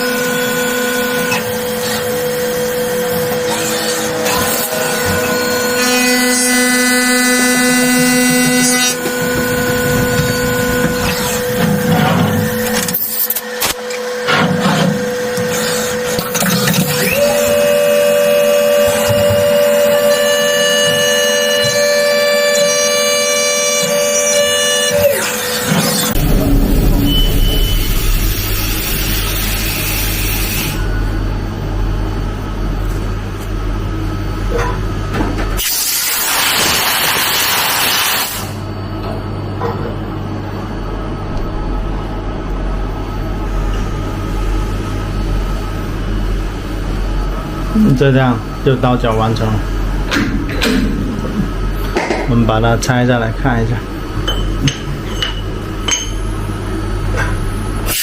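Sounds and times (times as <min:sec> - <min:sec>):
milling machine cutting metal whine: 0:00.0 - 0:39.6
metal cutting hiss: 0:35.6 - 0:38.6.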